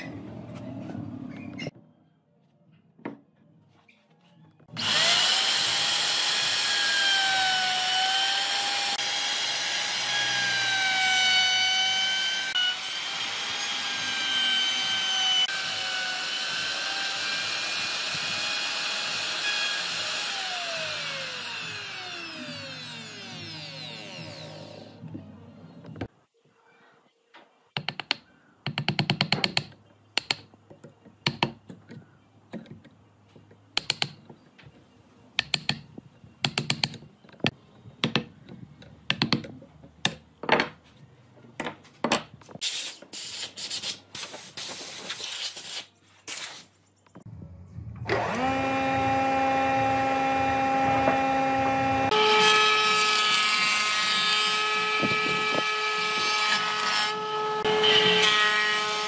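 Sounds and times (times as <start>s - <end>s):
power tool motor running: 4.8s - 25.0s, 48.0s - 59.0s.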